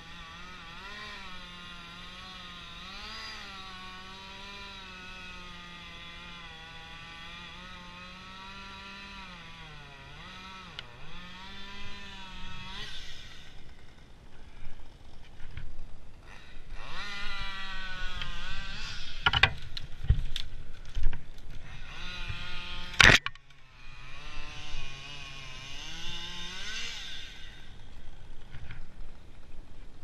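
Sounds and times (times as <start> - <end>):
saw motor whining: 0.0 - 15.2, 16.2 - 19.7, 21.6 - 28.5
wood cracking: 19.2 - 21.6, 22.2 - 23.6.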